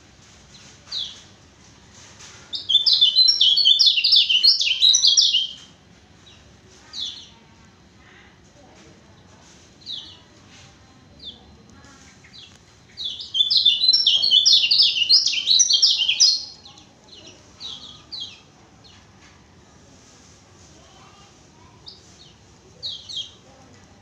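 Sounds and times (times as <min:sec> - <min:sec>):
songbird singing: 0:02.5 - 0:07.4, 0:11.1 - 0:19.0.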